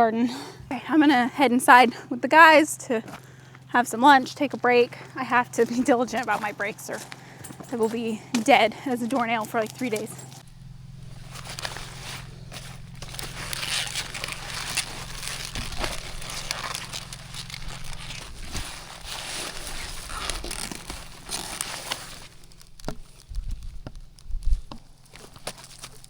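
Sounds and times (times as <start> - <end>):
low hum: 0.0 - 26.0
rustling and crinkling: 4.1 - 26.0.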